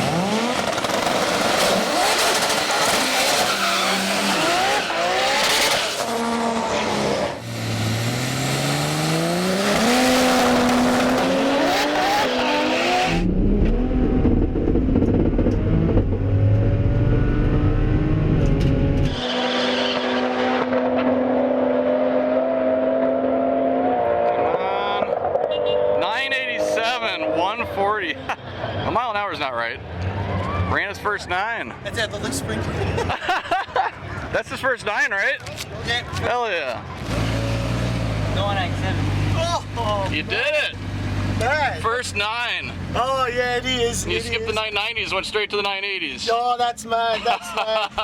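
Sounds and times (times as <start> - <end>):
drag car engine at full throttle: 0.0 - 28.8, 36.7 - 44.9.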